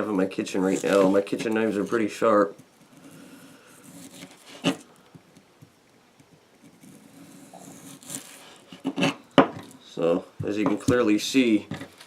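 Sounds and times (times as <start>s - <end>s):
knife scraping on board: 0.6s - 2.1s, 2.9s - 4.9s, 6.7s - 9.7s.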